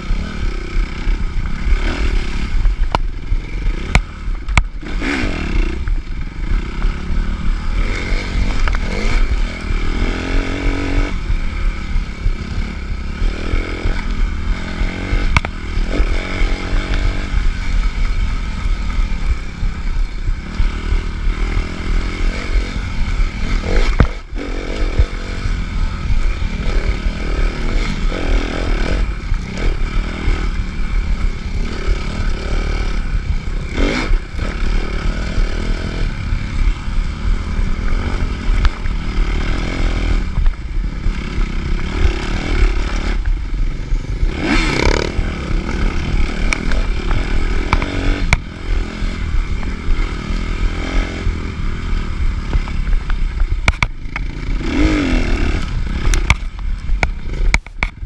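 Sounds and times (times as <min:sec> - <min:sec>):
motorcycle engine revving: 0:00.0 - 0:58.0
bike knocks and rattles: 0:52.5 - 0:55.0.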